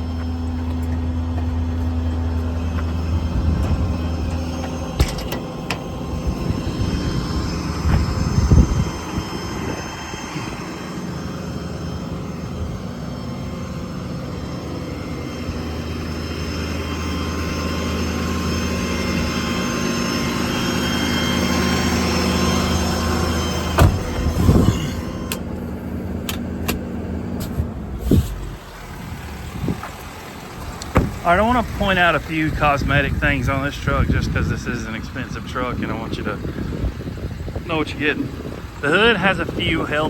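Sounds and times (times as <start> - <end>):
air compressor droning: 0.0 - 40.0
diesel engine running: 0.0 - 40.0
metal clanks: 4.3 - 5.9.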